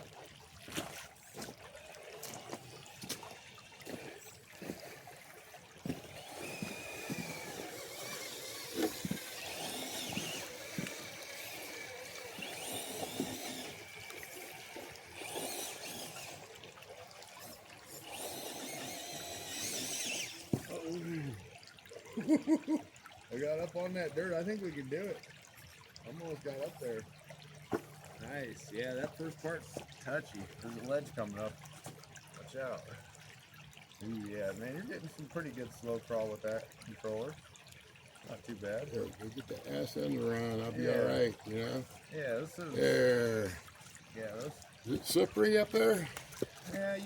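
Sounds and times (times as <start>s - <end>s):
creek water trickling: 0.0s - 47.0s
electric motor whine: 5.9s - 16.5s, 17.3s - 20.7s.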